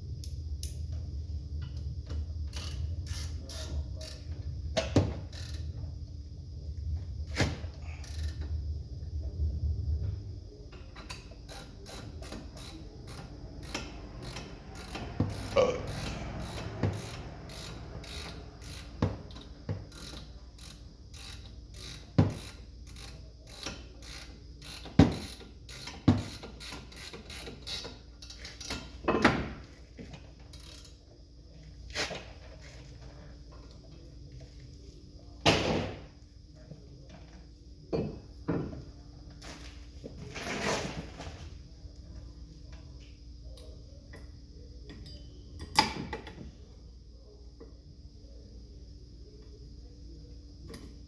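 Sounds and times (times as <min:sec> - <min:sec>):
ratchet wrench clicking: 0:02.5 - 0:04.2, 0:05.3 - 0:05.7, 0:08.0 - 0:08.5, 0:11.0 - 0:28.9, 0:30.5 - 0:31.0.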